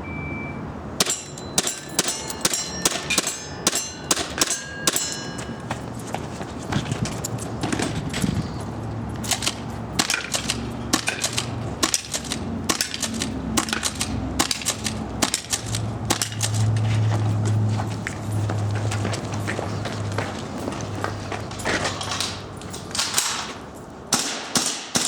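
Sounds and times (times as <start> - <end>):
pellets hitting metal targets: 1.0 - 5.6
airsoft gun shots: 24.1 - 25.0.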